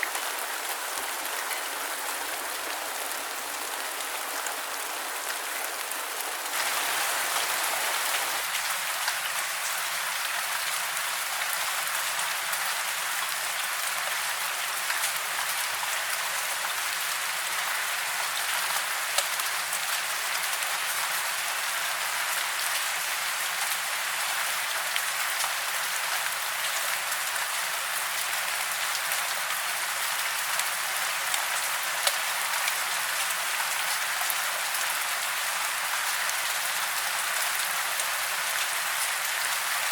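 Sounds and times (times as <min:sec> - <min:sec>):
heavy rain falling: 0:00.0 - 0:12.5.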